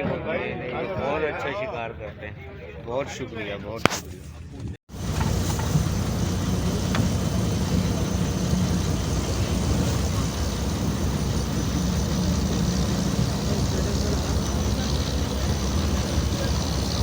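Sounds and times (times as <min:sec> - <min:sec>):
boat engine throbbing: 0:04.9 - 0:17.0.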